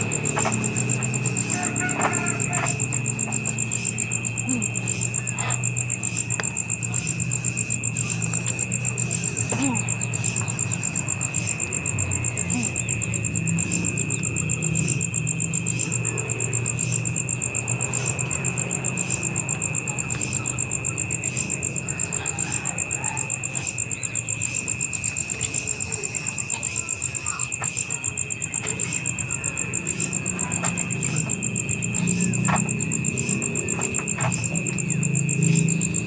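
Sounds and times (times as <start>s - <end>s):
insects trilling: 0.0s - 36.0s.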